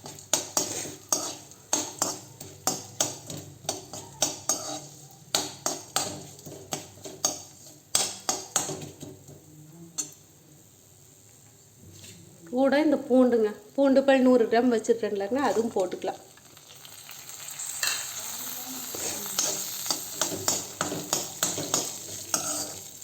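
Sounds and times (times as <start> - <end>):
spoon scraping iron pan: 0.0 - 9.3, 17.8 - 18.2, 18.8 - 23.0.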